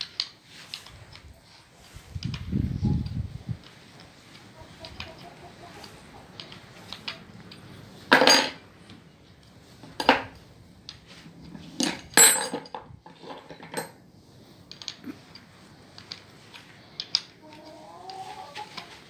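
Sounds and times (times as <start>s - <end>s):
metal objects clinking: 8.1s - 8.6s, 11.6s - 14.0s.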